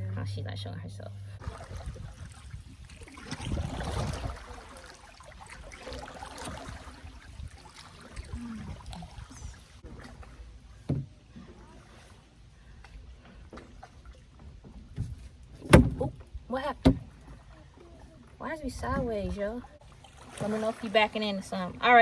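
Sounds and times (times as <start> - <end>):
paddles splashing in water: 1.4 - 22.0
short thump: 14.9 - 16.2.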